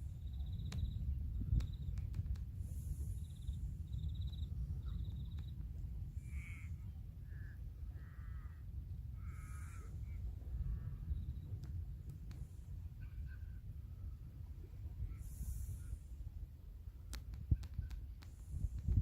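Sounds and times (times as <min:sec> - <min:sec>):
steady low rumble: 0:00.0 - 0:19.0
bird giving harsh caw-like calls: 0:06.2 - 0:08.6, 0:09.2 - 0:10.9.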